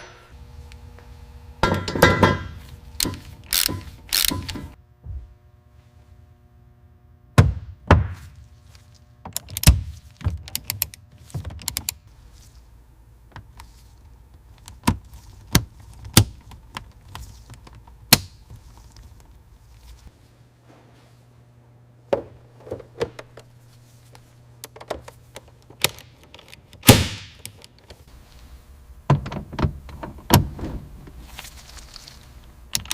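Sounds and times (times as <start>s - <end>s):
tools knocking and tapping: 1.6s - 4.8s.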